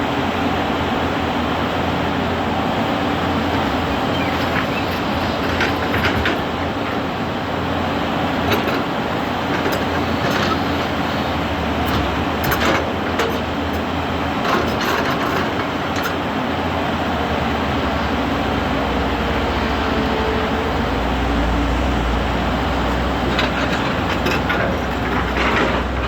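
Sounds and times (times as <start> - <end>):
excavator diesel engine running: 0.0 - 26.0
metallic clanks and knocks: 3.2 - 7.2, 8.3 - 16.3, 22.9 - 26.0.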